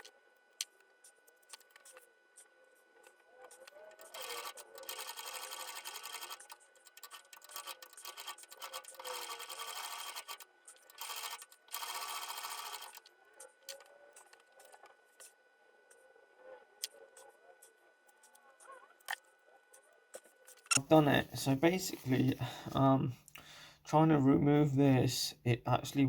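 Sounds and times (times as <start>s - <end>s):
sewing machine running: 3.9s - 13.1s.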